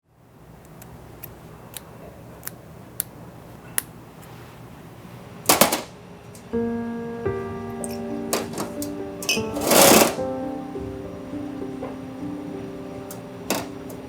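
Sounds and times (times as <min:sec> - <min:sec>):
low steady hum: 0:00.2 - 0:14.0
music with held tones: 0:06.4 - 0:14.0.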